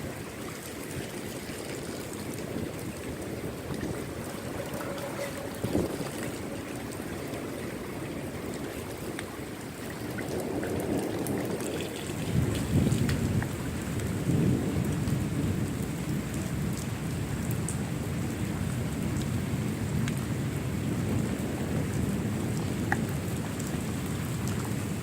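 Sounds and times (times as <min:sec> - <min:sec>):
rain hiss: 0:00.0 - 0:25.0
rolling thunder: 0:01.6 - 0:08.6, 0:10.3 - 0:16.6
raindrop ticks: 0:08.5 - 0:17.9, 0:21.1 - 0:24.9.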